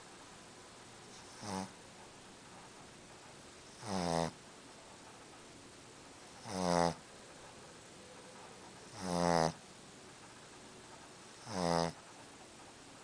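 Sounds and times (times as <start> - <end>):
dog snoring: 1.1 - 1.8, 3.6 - 4.4, 6.3 - 7.1, 8.8 - 9.6, 11.4 - 12.0.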